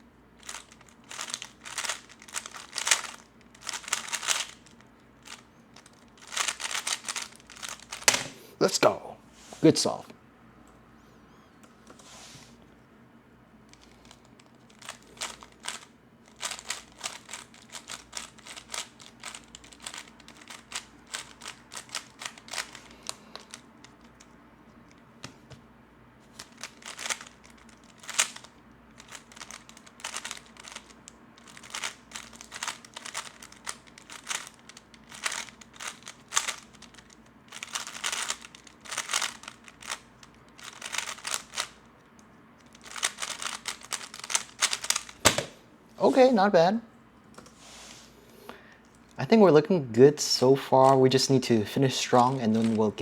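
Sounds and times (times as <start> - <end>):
puzzle cube plastic clicking: 0.4 - 8.3, 13.7 - 24.3, 26.4 - 45.5.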